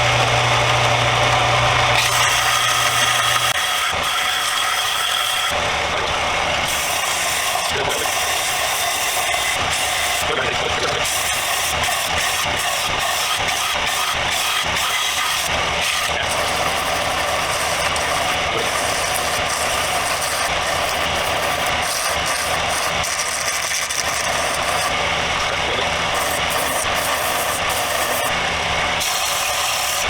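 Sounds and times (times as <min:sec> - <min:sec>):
sander sanding wood: 0:00.0 - 0:30.0.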